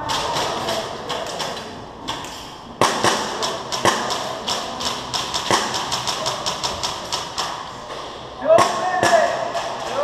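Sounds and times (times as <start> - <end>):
airsoft gunfire: 0.0 - 2.2, 2.8 - 7.7, 8.4 - 9.8
pellets striking: 2.8 - 7.7, 8.4 - 10.0.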